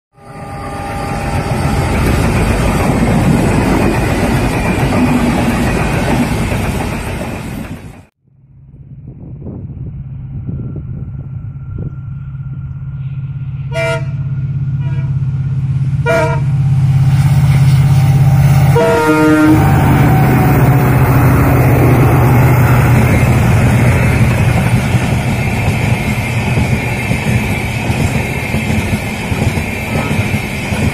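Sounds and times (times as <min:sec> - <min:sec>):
diesel locomotive engine rumbling: 0:00.2 - 0:30.9
locomotive horn blast: 0:12.9 - 0:24.4.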